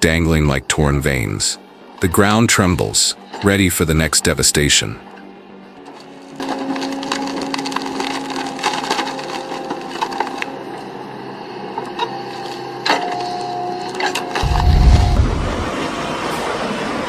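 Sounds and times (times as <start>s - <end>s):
excavator engine drone: 5.0s - 17.0s
wood cracking and splintering: 6.4s - 10.4s.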